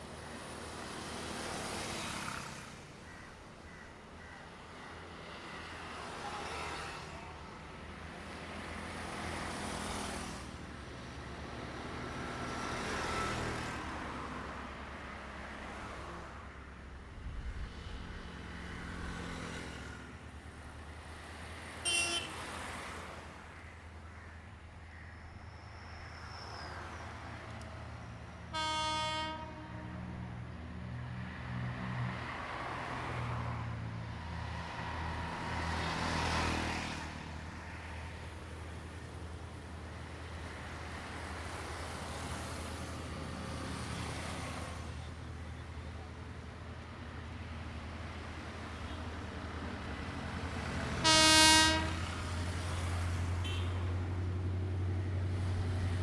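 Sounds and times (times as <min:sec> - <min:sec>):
train horn blast: 0:28.5 - 0:30.4, 0:51.0 - 0:52.3.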